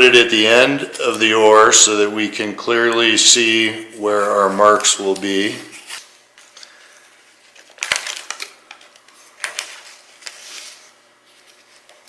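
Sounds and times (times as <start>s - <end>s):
masking tape crackling and ripping: 7.4s - 12.0s.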